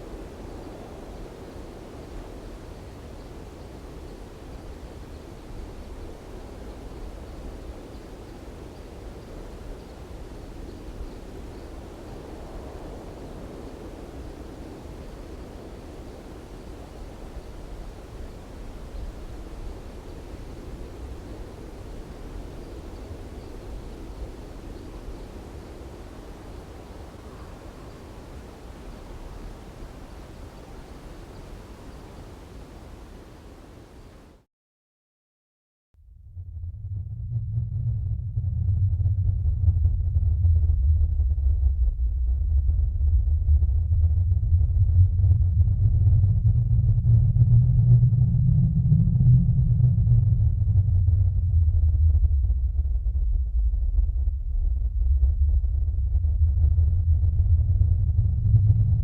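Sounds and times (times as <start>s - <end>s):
strong wind blowing: 36.1s - 59.0s.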